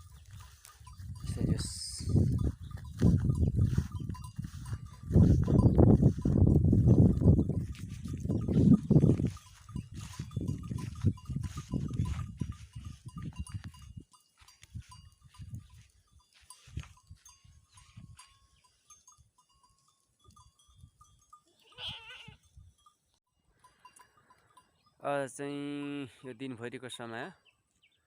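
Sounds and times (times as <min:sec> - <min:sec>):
small bells ringing: 0:00.0 - 0:27.0
goat bleat: 0:21.5 - 0:22.4.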